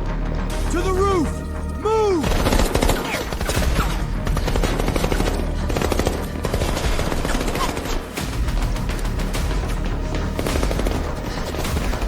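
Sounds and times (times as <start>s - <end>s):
dramatic background music: 0.0s - 12.0s
rapid automatic gunfire: 2.3s - 8.3s.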